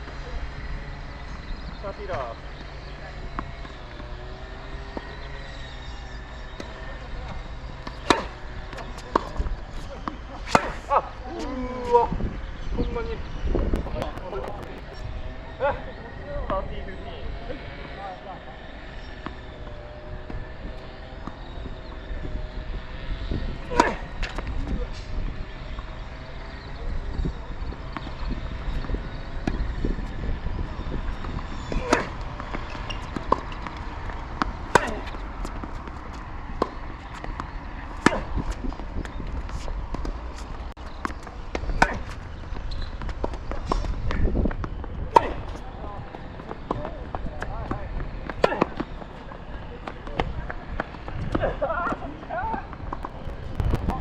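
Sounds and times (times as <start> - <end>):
tennis ball struck by racket: 6.6 - 11.1, 23.5 - 25.0, 31.0 - 45.7, 46.6 - 49.1
wind buffeting microphone: 7.1 - 17.5, 18.8 - 54.0
ball bouncing: 52.5 - 54.0.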